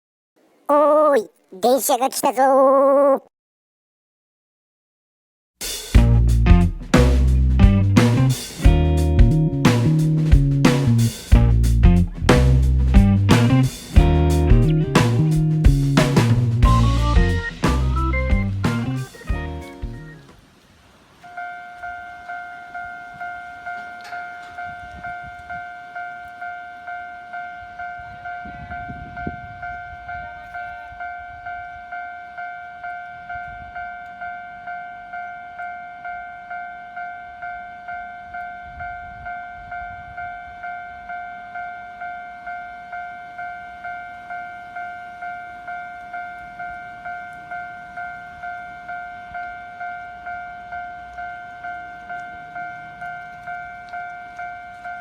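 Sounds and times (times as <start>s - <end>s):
level-crossing alarm bell: 31.0s - 55.0s.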